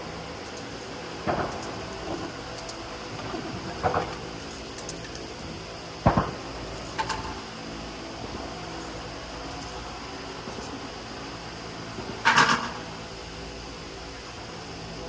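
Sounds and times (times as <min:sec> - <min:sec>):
faint hum: 0:00.0 - 0:10.7
short knocks and clinks: 0:00.3 - 0:05.6, 0:06.6 - 0:07.5, 0:09.5 - 0:10.0.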